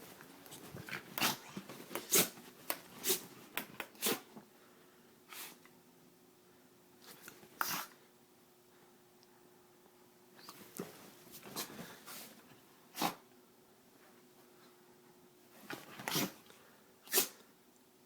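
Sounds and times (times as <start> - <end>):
dog sneezing: 1.2 - 2.4, 3.0 - 3.3, 4.0 - 4.3, 5.3 - 5.6, 7.6 - 8.0, 12.9 - 13.2, 15.9 - 16.4, 17.0 - 17.4.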